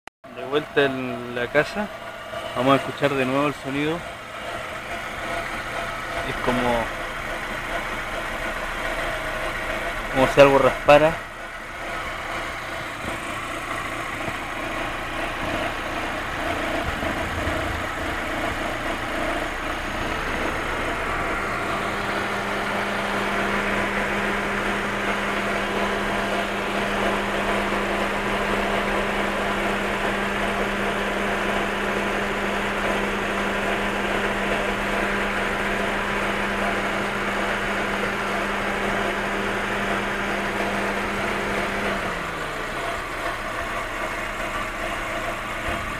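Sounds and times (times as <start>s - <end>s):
car engine idling: 0.3s - 45.9s
steady hum: 0.4s - 29.1s
scraping rubbing noise: 16.4s - 19.2s.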